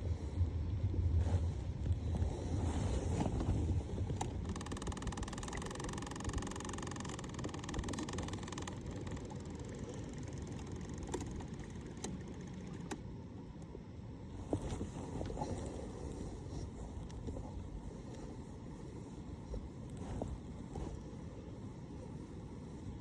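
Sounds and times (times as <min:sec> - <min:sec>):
wind and water against a kayak: 0:00.0 - 0:23.0
ticking mechanical whir: 0:04.0 - 0:13.8
sharp clicks: 0:04.2 - 0:13.0.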